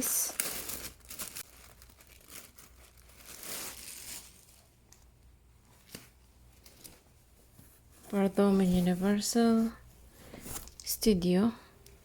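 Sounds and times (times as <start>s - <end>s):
packaging crinkling and rustling: 0.0s - 5.0s.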